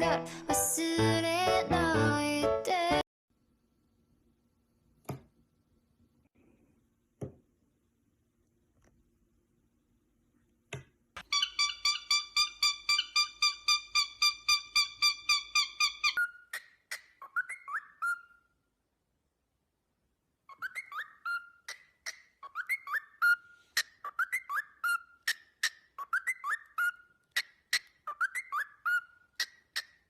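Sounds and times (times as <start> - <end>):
parrot whistling and chirping: 11.2 - 18.6, 20.5 - 30.0.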